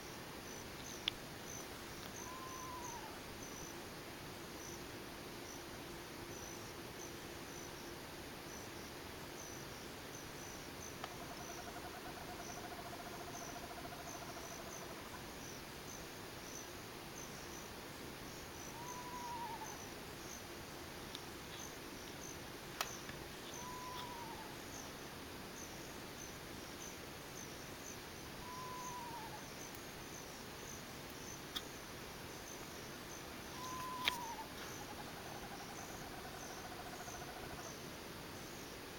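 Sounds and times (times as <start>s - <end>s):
insects chirping: 0.0s - 3.8s, 4.4s - 38.9s
animal whistled calls: 23.6s - 24.4s, 33.6s - 34.4s.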